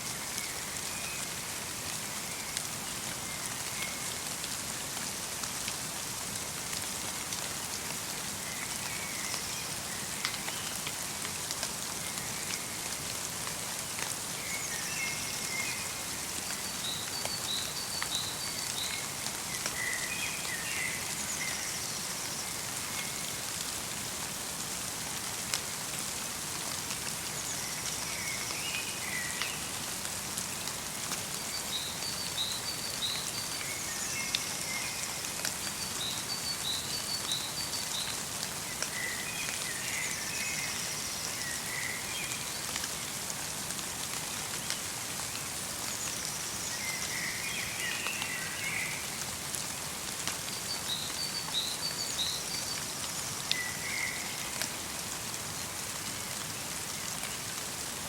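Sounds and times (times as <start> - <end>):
light rain falling: 0.0 - 58.0
songbirds chirping: 30.6 - 43.3, 44.4 - 57.7.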